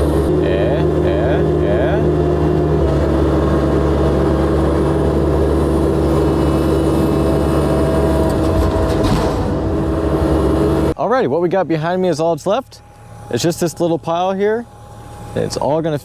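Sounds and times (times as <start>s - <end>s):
excavator diesel engine running: 0.0s - 11.0s.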